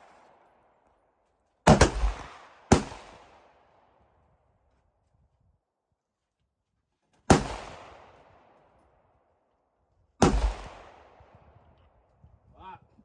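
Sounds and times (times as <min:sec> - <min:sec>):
gunshots with echo: 0:01.7 - 0:03.5, 0:10.2 - 0:11.2.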